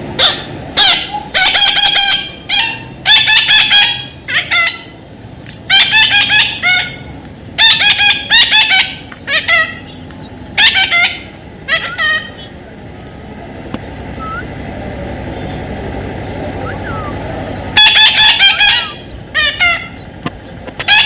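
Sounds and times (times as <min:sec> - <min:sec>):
baby parrot squawking: 0:00.2 - 0:05.0, 0:05.7 - 0:12.5, 0:17.8 - 0:20.0, 0:20.8 - 0:21.0.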